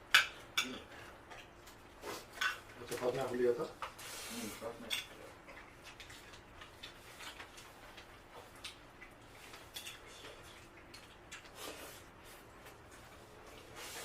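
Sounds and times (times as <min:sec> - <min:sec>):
cutlery clicks and taps eating: 0:00.0 - 0:03.0, 0:04.9 - 0:11.5.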